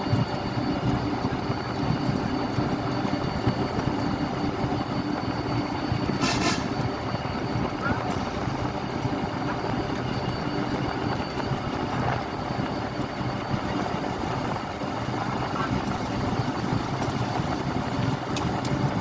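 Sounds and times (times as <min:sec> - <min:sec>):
road traffic: 0:05.5 - 0:18.9.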